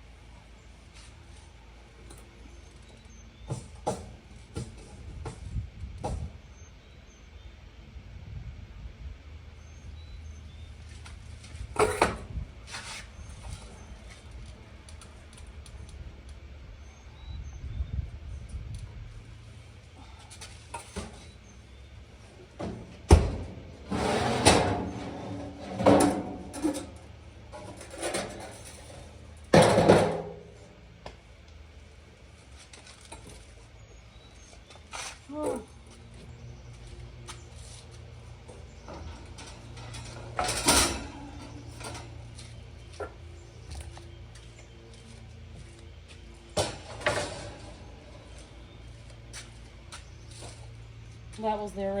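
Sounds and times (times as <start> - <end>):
steady low hum: 0.0 - 52.0
metal stove parts scraping and rattling: 11.8 - 13.9, 22.6 - 30.7, 38.4 - 42.4, 46.5 - 48.8
metal clanks: 22.6 - 30.6, 38.7 - 42.3.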